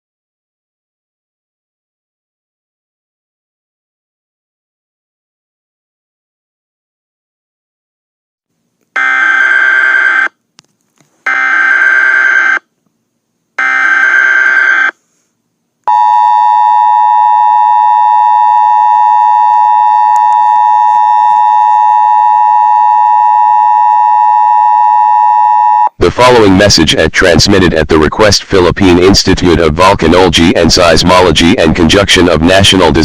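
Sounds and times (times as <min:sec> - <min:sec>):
two-tone attention signal: 0:15.9 - 0:26.0.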